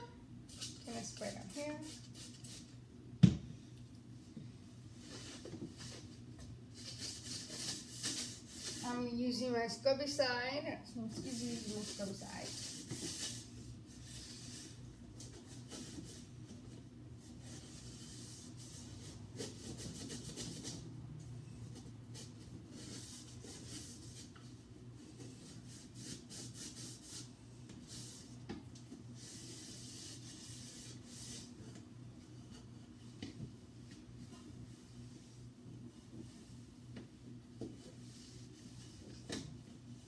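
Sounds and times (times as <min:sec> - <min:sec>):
sponge scrubbing plastic: 0:11.0 - 0:14.8.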